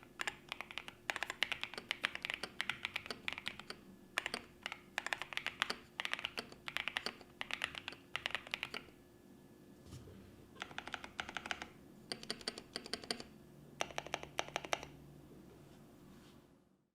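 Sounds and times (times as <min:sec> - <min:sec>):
mechanical keyboard typing: 0:00.0 - 0:09.0, 0:10.6 - 0:15.0.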